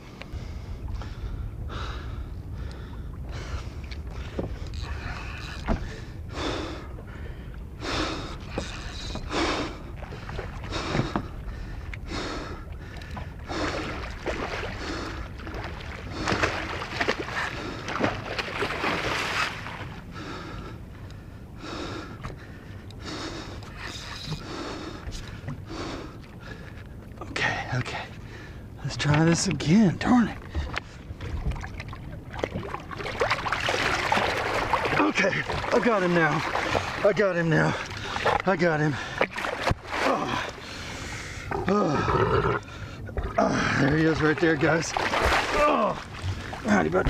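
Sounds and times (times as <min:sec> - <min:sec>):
man breathing hard: 0:00.0 - 0:13.8
wind rumble on microphone: 0:00.0 - 0:23.0.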